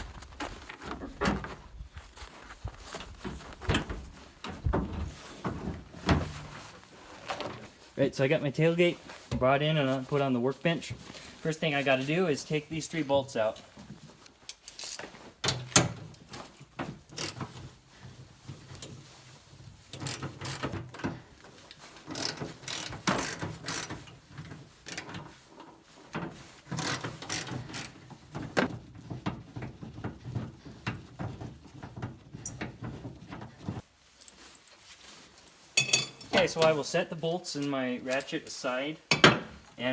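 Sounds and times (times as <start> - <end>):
ratchet wrench clicking: 22.1 - 23.9, 26.8 - 27.9.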